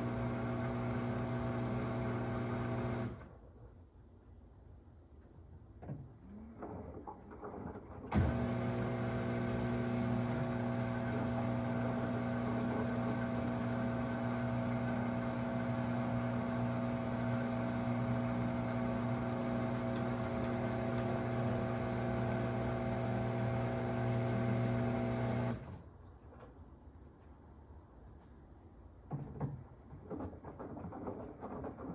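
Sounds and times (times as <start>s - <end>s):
washing machine loud buzz: 0.0s - 3.2s, 8.1s - 25.6s.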